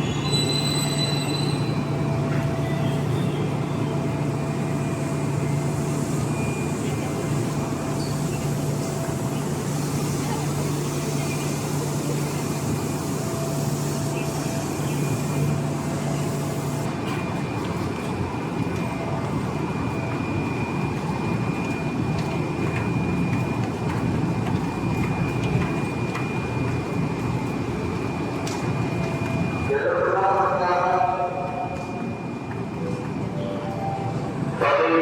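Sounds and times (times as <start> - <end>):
train noise: 0.0 - 35.0.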